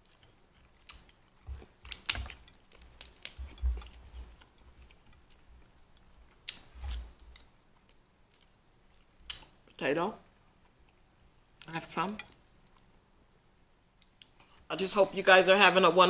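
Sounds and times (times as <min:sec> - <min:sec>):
wet chewing and biting: 0:00.0 - 0:05.5, 0:06.4 - 0:08.0.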